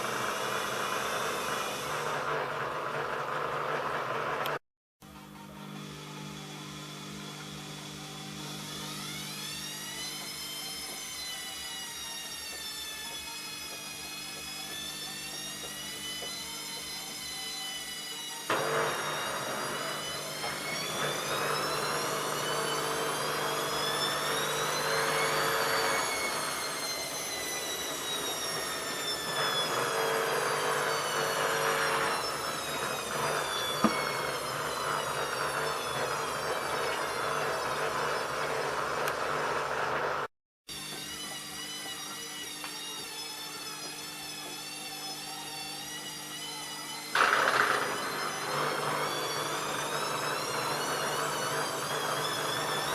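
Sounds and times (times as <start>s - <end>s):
washing machine motor whining: 0.0s - 52.9s.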